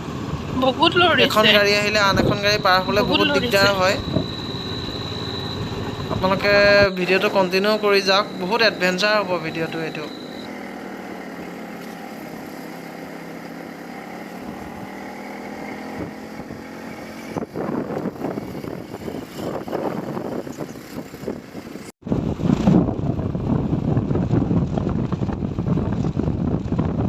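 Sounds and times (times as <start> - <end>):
wind buffeting microphone: 0.0 - 7.4, 15.8 - 27.0
rough rumbling noise: 0.0 - 10.4
motorcycle engine running: 0.0 - 27.0.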